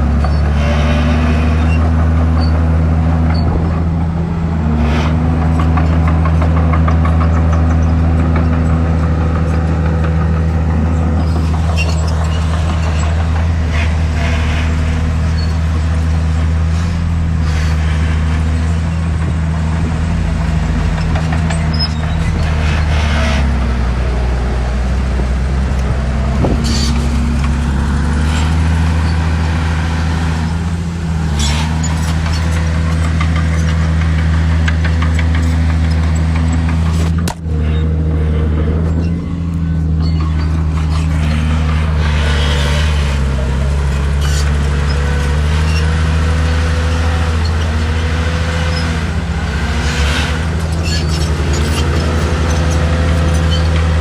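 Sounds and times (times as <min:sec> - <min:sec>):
bulldozer diesel engine: 0:00.0 - 0:54.0.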